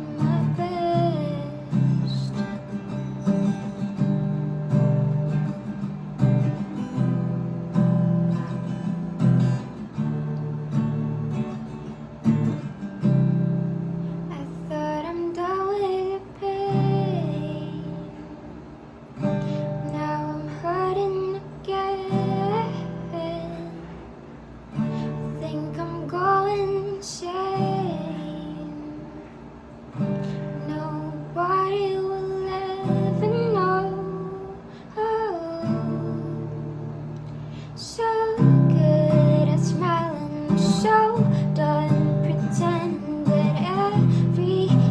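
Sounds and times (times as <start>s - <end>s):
person singing: 0.0s - 2.6s, 14.3s - 18.4s, 25.3s - 29.3s, 37.8s - 44.9s
woman singing: 0.0s - 5.8s, 13.1s - 44.9s
acoustic guitar strumming: 0.0s - 44.9s.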